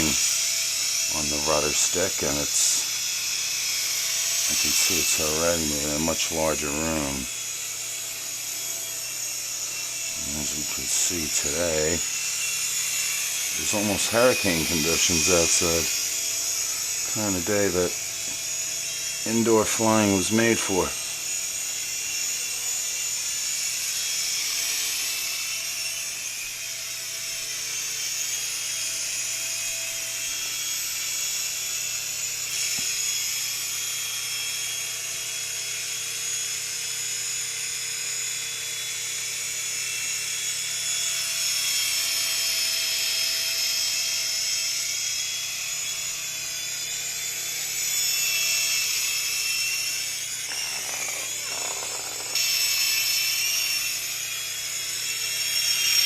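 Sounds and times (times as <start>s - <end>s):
small helicopter motor whine: 0.0s - 56.0s.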